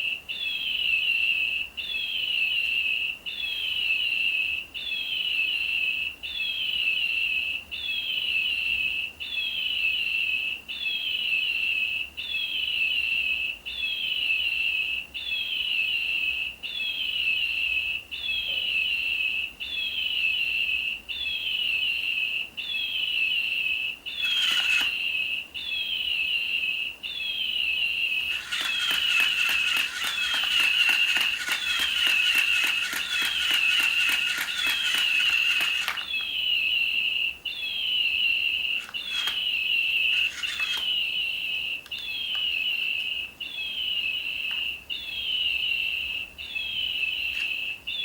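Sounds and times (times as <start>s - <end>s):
toy bird electronic chirping: 15.2s - 48.0s.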